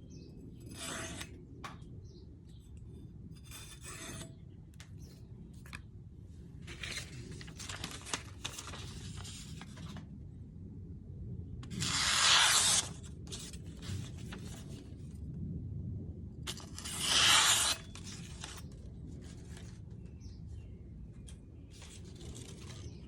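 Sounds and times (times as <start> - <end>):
tool scraping steel: 0.7 - 1.8, 3.4 - 4.5, 16.5 - 18.0.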